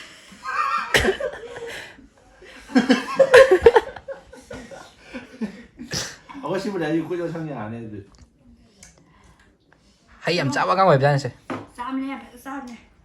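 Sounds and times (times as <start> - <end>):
people laughing: 0.3 - 6.7.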